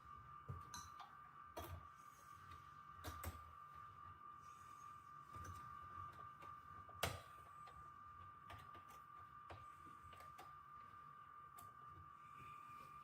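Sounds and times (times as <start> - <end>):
clicks and taps on computer parts: 7.0 - 7.3.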